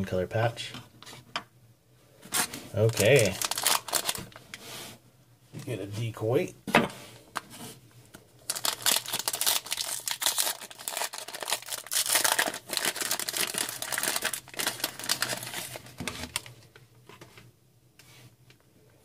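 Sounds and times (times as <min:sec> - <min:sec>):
plastic wrapper crinkling: 0:02.3 - 0:04.6, 0:08.4 - 0:16.8.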